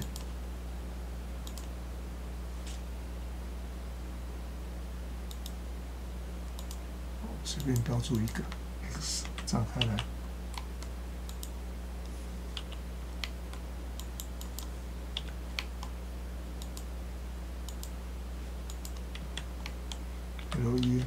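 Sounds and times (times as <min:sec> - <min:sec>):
keyboard and mouse clicks: 0:00.0 - 0:00.3, 0:01.4 - 0:01.7, 0:05.3 - 0:05.6, 0:06.5 - 0:06.8, 0:09.2 - 0:11.6, 0:12.5 - 0:15.9, 0:16.6 - 0:16.9, 0:17.7 - 0:18.0, 0:18.6 - 0:21.0
low electrical hum: 0:00.0 - 0:21.0.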